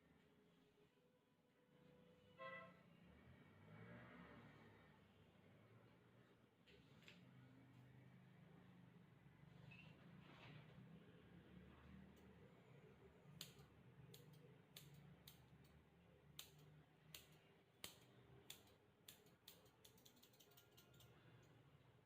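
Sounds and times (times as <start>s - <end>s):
grooming scissors snipping fur: 13.3s - 21.2s.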